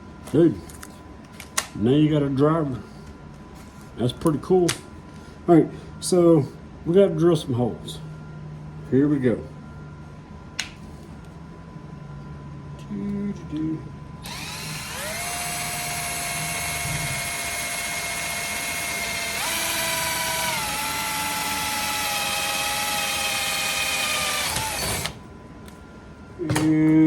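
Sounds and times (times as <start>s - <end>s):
power drill drilling into metal: 14.2s - 25.2s.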